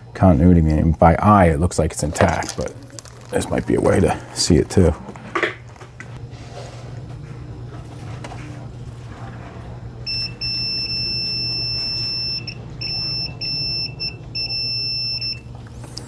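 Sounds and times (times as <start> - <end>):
multimeter continuity beeping: 10.1 - 15.5.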